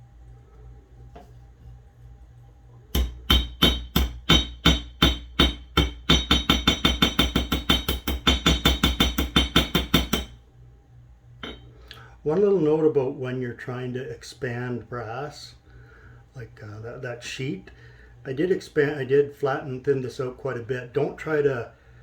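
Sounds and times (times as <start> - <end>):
hammer tapping sheet metal: 2.9 - 10.4, 11.4 - 11.6.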